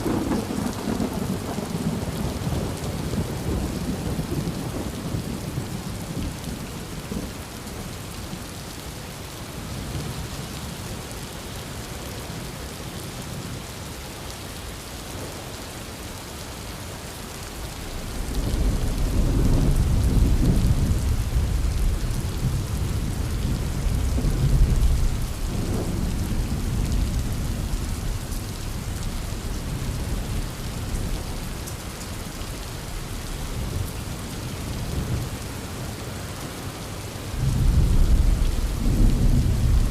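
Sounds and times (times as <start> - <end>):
deep roll of thunder: 0.0 - 7.3, 17.9 - 31.5, 37.4 - 39.9
heavy rain falling: 0.0 - 39.9.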